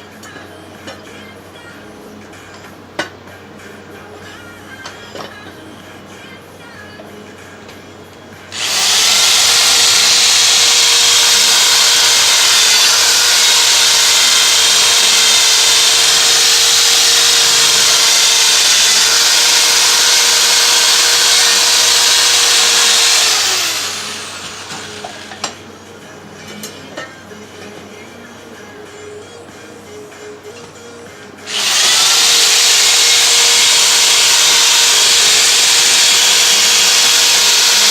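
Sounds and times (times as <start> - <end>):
power tool sanding metal rim: 8.5 - 25.4, 31.5 - 37.9.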